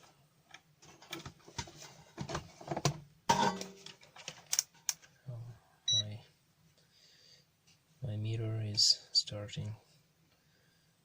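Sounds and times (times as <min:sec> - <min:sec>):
hands handling electronic parts: 0:00.0 - 0:03.0, 0:03.6 - 0:05.2.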